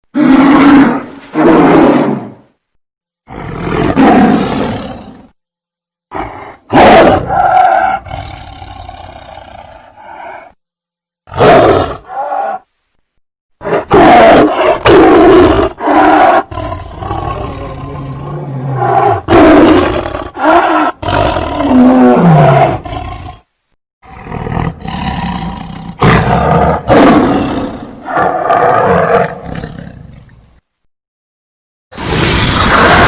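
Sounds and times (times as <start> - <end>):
dragon roars and growls: 3.3 - 5.4, 6.1 - 10.6, 13.7 - 23.4, 32.0 - 33.0.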